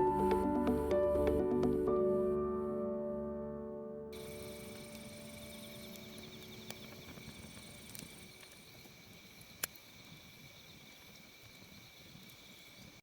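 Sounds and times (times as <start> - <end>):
background music: 0.0 - 7.2.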